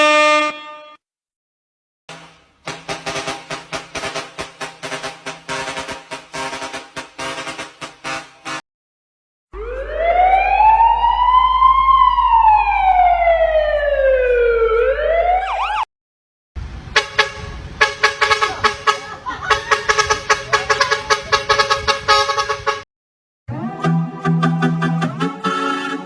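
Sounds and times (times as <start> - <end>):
horn-like tones and sharp beats: 0.0 - 1.0, 2.1 - 8.6, 17.0 - 22.9
siren wail: 9.6 - 15.9.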